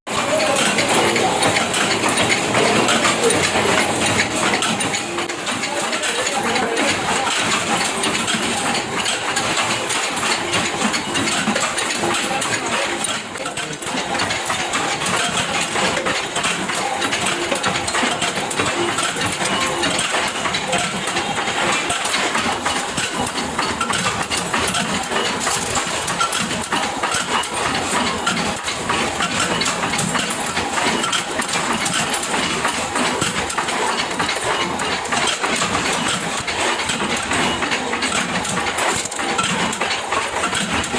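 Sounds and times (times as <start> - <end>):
factory machinery clatter: 0.1 - 40.9.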